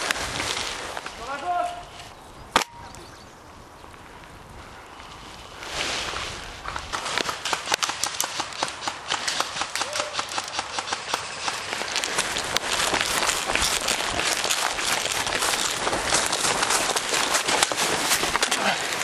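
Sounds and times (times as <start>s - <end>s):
brush crackling and rustling: 0.0s - 2.2s, 3.9s - 19.0s
footsteps through undergrowth: 0.0s - 2.2s, 3.9s - 7.4s, 11.4s - 19.0s.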